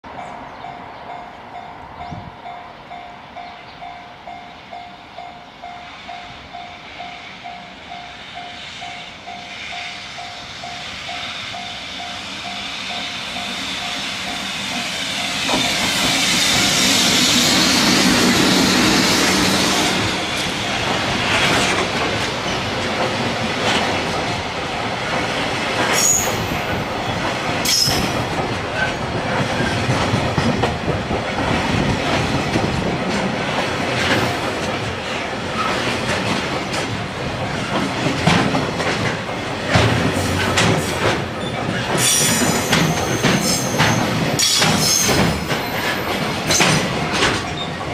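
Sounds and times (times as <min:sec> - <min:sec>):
electric locomotive passing: 0:00.0 - 0:47.9
wheel flange squeals: 0:25.9 - 0:26.8, 0:41.4 - 0:46.7.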